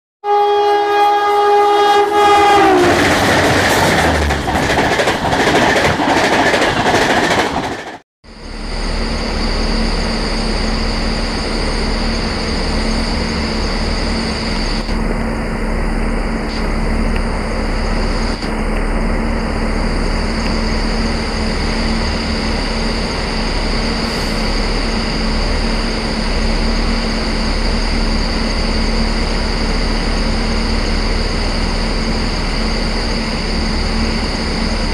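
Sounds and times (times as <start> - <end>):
locomotive horn: 0.2 - 3.4
train clattering on rails: 2.3 - 8.0
low hum with high whine: 8.3 - 34.9.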